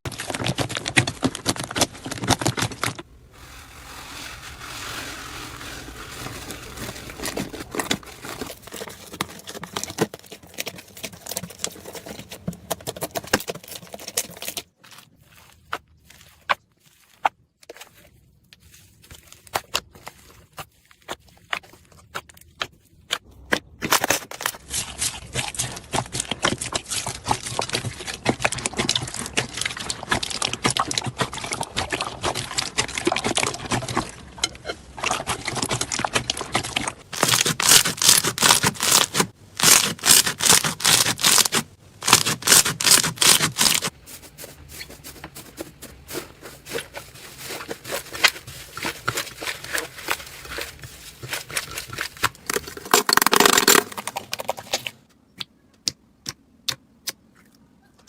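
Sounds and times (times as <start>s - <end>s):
slime squishing: 0.1s - 55.1s
slime crackling and popping: 36.1s - 43.9s, 46.8s - 54.9s.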